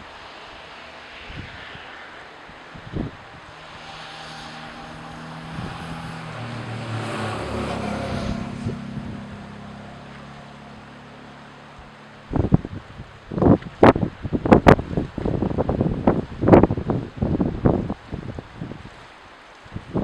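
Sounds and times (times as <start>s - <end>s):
passing engine hum: 0.0s - 20.0s
wind noise on microphone: 0.0s - 20.0s.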